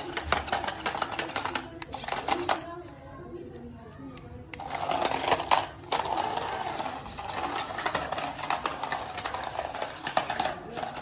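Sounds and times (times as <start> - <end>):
rapid clicking and clattering: 0.0 - 2.6.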